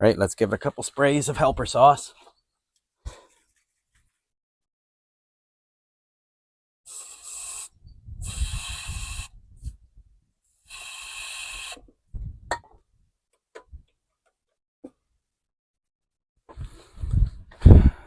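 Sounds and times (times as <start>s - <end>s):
aerosol can spraying: 6.9s - 9.3s, 10.7s - 11.8s.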